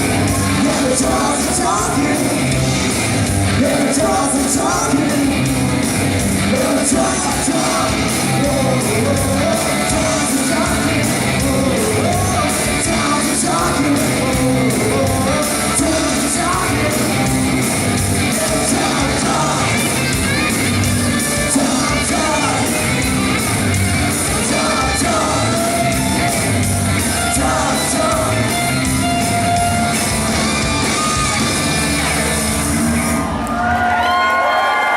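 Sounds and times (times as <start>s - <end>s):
person singing: 0.0s - 2.6s, 3.5s - 20.5s, 21.4s - 26.4s, 27.1s - 29.6s
rock band playing: 0.0s - 34.9s.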